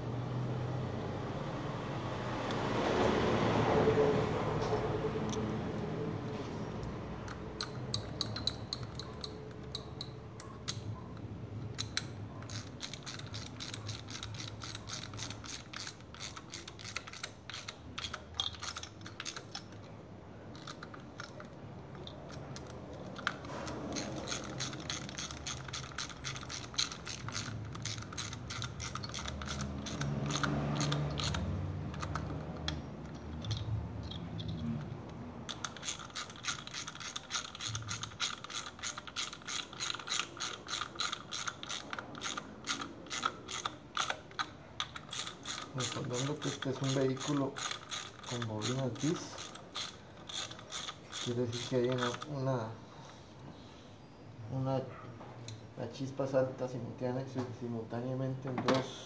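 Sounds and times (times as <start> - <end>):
ratchet wrench clicking: 7.2 - 19.8, 20.5 - 52.3.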